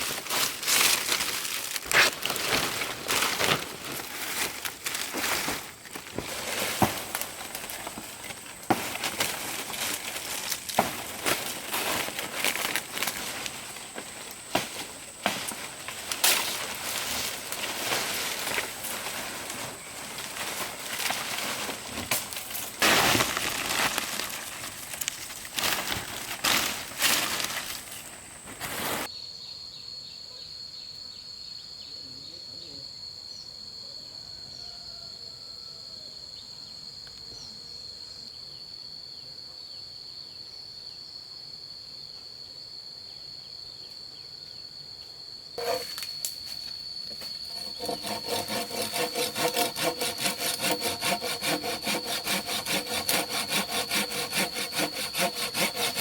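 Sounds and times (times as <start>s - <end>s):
high thin insect drone: 0.0s - 29.1s, 42.0s - 56.0s
saw cutting bamboo: 45.6s - 46.1s, 47.1s - 56.0s.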